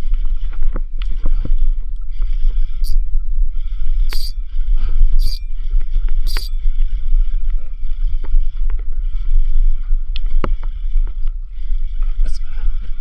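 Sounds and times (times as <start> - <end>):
wind rumbling on microphone: 0.0 - 13.0
hiss of water: 4.1 - 4.3, 6.3 - 6.5
short clicks and knocks: 4.1 - 4.3.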